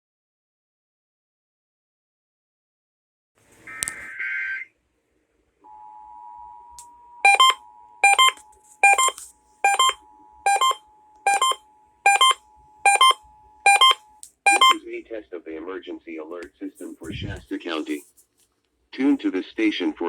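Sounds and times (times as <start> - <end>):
loud beep: 7.2 - 14.8
two-tone attention signal: 7.2 - 14.8.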